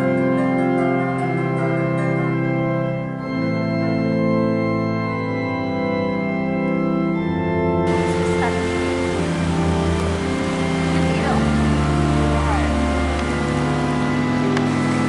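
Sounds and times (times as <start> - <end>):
organ chords: 0.0 - 15.0
steady hiss: 7.9 - 15.0.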